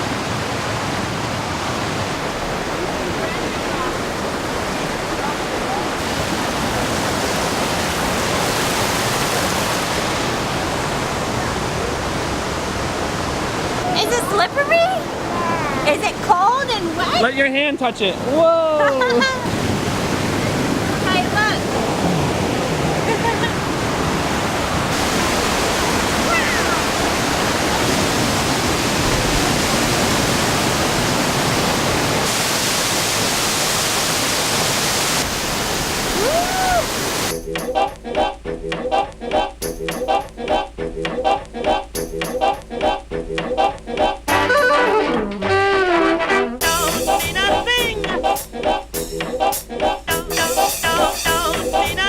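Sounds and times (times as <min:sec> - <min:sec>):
water rushing down cascades: 0:00.0 - 0:37.4.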